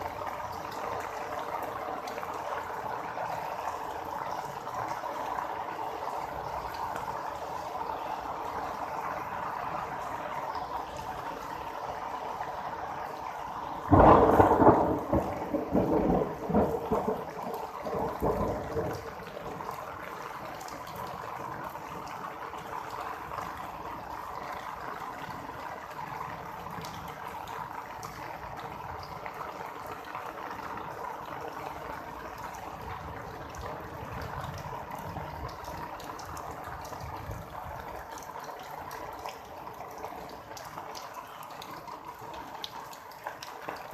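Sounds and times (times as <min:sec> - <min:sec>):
steady rain: 0:00.0 - 0:43.9
thunder crack and rumble: 0:13.9 - 0:19.8.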